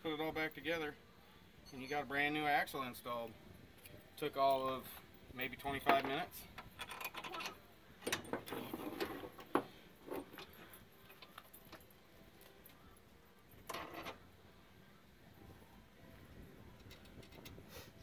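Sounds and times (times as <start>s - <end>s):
metal tools clinking and tapping: 5.4s - 12.8s.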